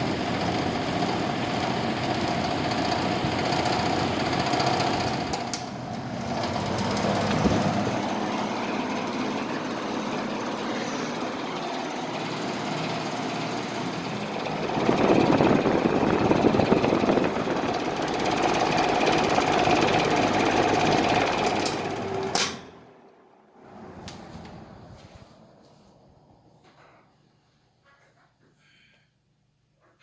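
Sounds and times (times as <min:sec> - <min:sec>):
box fan running: 0:00.0 - 0:27.1.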